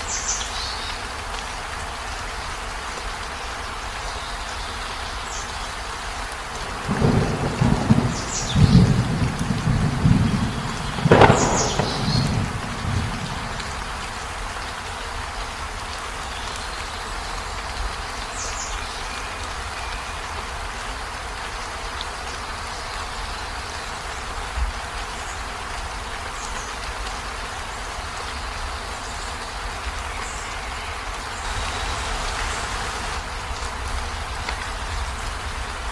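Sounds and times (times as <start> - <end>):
rain on a river: 0.0 - 35.9.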